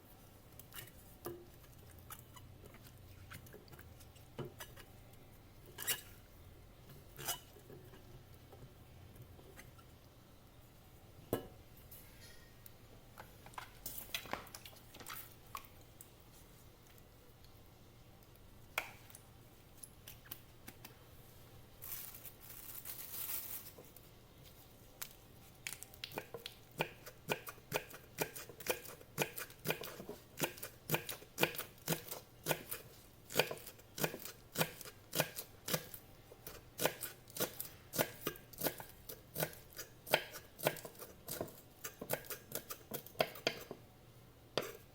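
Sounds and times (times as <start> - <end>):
knife chopping on cutting board: 26.8 - 43.8.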